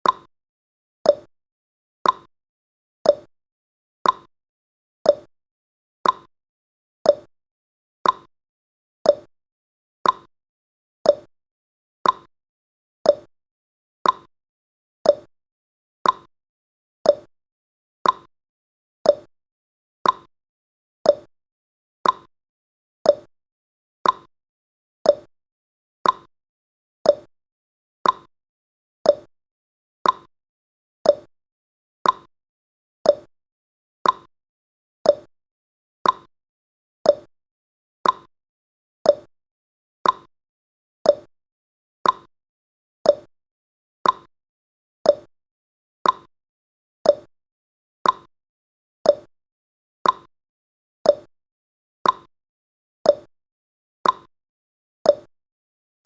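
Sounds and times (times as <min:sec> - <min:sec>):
timer ticking: 0:00.0 - 0:00.3, 0:01.1 - 0:01.3, 0:02.0 - 0:02.3, 0:03.1 - 0:03.3, 0:04.0 - 0:04.3, 0:05.1 - 0:05.3, 0:06.0 - 0:06.3, 0:07.1 - 0:07.3, 0:08.0 - 0:08.3, 0:09.1 - 0:09.3, 0:10.0 - 0:10.3, 0:11.1 - 0:11.3, 0:12.0 - 0:12.3, 0:13.1 - 0:13.3, 0:14.0 - 0:14.3, 0:15.1 - 0:15.3, 0:16.0 - 0:16.3, 0:17.1 - 0:17.3, 0:18.0 - 0:18.3, 0:19.1 - 0:19.3, 0:20.0 - 0:20.3, 0:21.1 - 0:21.3, 0:22.0 - 0:22.3, 0:23.1 - 0:23.3, 0:24.0 - 0:24.3, 0:25.1 - 0:25.3, 0:26.0 - 0:26.3, 0:27.1 - 0:27.3, 0:28.0 - 0:28.3, 0:29.1 - 0:29.3, 0:30.0 - 0:30.3, 0:31.0 - 0:31.3, 0:32.0 - 0:32.3, 0:33.1 - 0:33.3, 0:34.0 - 0:34.3, 0:35.1 - 0:35.3, 0:36.0 - 0:36.3, 0:37.1 - 0:37.3, 0:38.0 - 0:38.3, 0:39.1 - 0:39.3, 0:40.0 - 0:40.3, 0:41.1 - 0:41.3, 0:42.0 - 0:42.3, 0:43.1 - 0:43.3, 0:44.0 - 0:44.3, 0:45.1 - 0:45.3, 0:46.0 - 0:46.3, 0:47.1 - 0:47.3, 0:48.0 - 0:48.3, 0:49.1 - 0:49.3, 0:50.0 - 0:50.3, 0:51.1 - 0:51.3, 0:52.0 - 0:52.3, 0:53.1 - 0:53.3, 0:54.0 - 0:54.3, 0:55.1 - 0:55.3.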